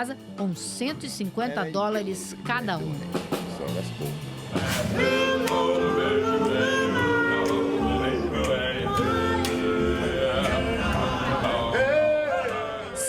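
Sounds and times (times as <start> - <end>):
deep bass voice: 1.3 - 5.4
vocal group singing in harmony: 4.4 - 13.0.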